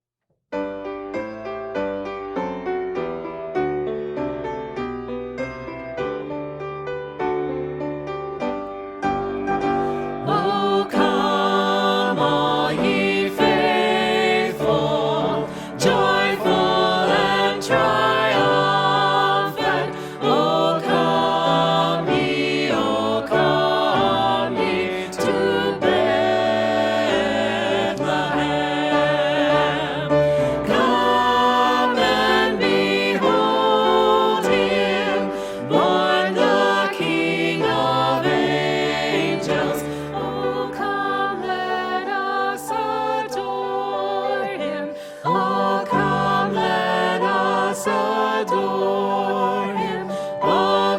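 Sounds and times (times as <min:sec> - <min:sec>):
choir singing: 0:09.5 - 0:50.9.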